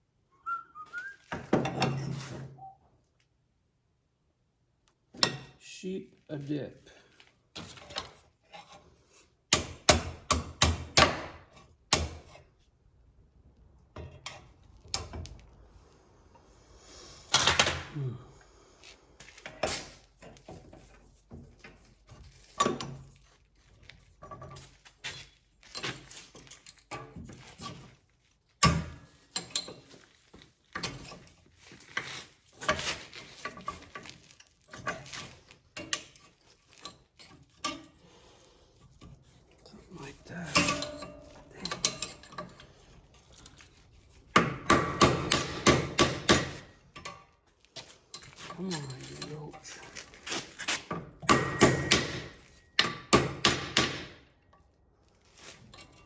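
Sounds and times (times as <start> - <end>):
parts knocking and clicking: 40.5 - 47.2, 49.9 - 54.3.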